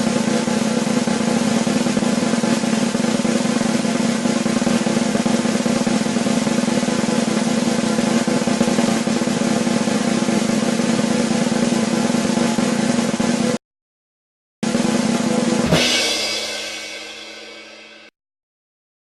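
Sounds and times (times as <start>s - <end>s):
snare drum roll: 0.0s - 13.6s, 14.6s - 18.1s.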